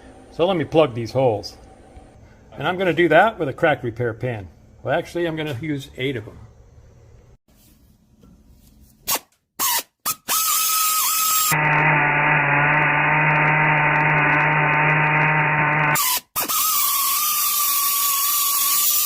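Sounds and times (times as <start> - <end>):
power drill boring into metal: 9.7 - 19.0.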